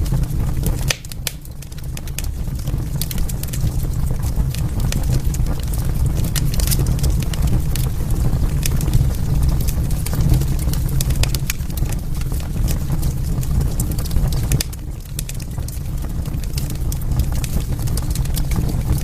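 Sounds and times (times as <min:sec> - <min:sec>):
wood fire crackling and popping: 0:00.0 - 0:19.0.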